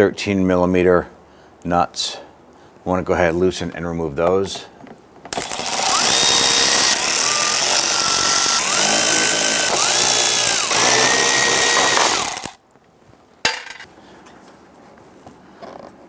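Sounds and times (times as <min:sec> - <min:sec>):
power tool motor whine: 0:05.3 - 0:12.6.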